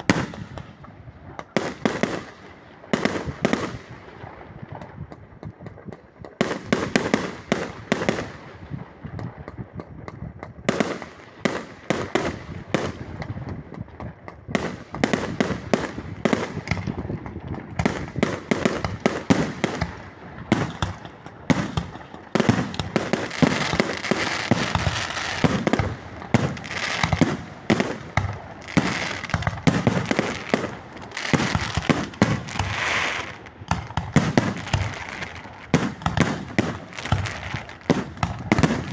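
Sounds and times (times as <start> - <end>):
fireworks bangs and crackles: 0.0 - 38.9.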